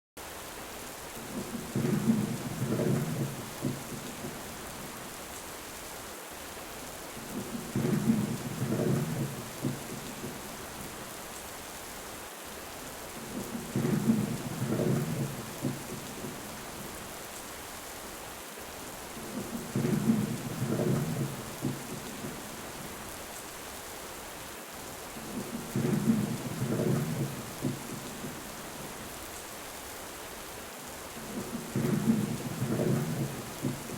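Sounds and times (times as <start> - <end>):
heavy rain: 0.2 - 33.9
deep thunder rumble: 1.3 - 4.5, 7.3 - 10.5, 13.3 - 16.5, 19.3 - 22.6, 25.2 - 28.5, 31.2 - 33.9.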